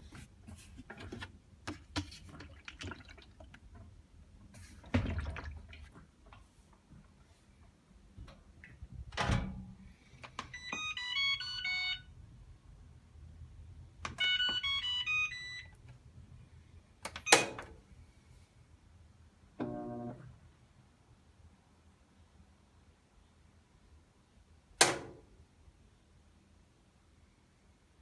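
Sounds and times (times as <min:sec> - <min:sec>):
washer electronic beeping tune: 0:10.5 - 0:12.1, 0:14.1 - 0:15.9, 0:17.1 - 0:17.6.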